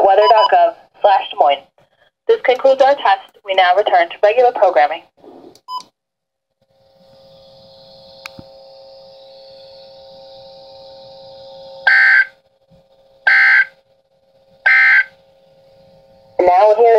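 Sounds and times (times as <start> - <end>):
radio hum and hiss: 0.0 - 1.7, 2.3 - 5.6
digital data tone bursts: 11.9 - 12.3, 13.3 - 13.7, 14.7 - 15.1.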